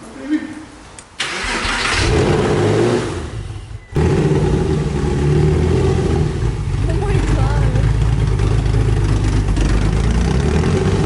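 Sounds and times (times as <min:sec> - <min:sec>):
car engine running: 0:03.6 - 0:11.0.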